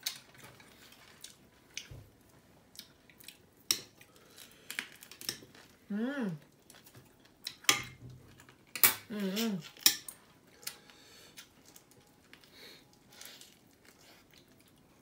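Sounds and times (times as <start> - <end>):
person humming: 5.9 - 6.4.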